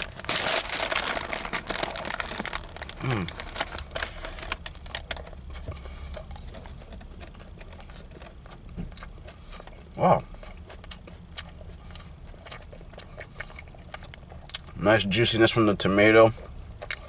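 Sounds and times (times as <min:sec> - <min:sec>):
paper wrapper crinkling: 0:00.0 - 0:05.4.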